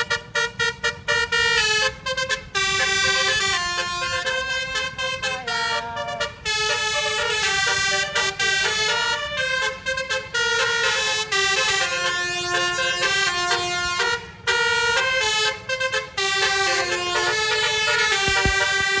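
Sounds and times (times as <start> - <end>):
multi-tone bus air horn melody: 0.0 - 19.0.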